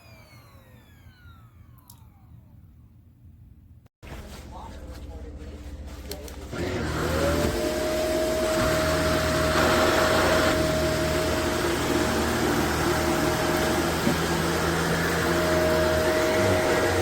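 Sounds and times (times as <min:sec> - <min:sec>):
vacuum cleaner motor whining: 0:00.0 - 0:02.8, 0:06.5 - 0:17.0.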